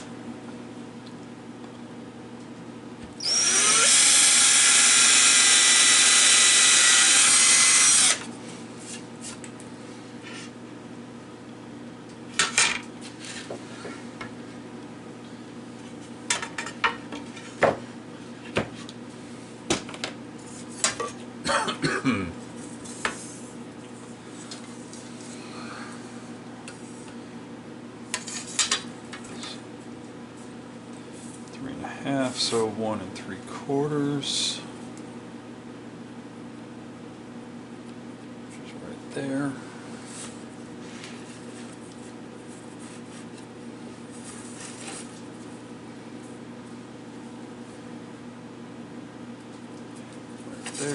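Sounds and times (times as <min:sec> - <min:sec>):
electric drill whining: 0:03.2 - 0:08.2.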